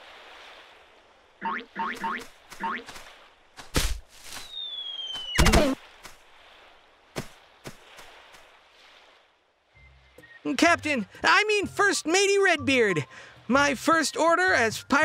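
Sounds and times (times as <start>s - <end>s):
falling whistle: 4.4s - 5.8s
cartoon sharp hit: 5.4s - 5.8s.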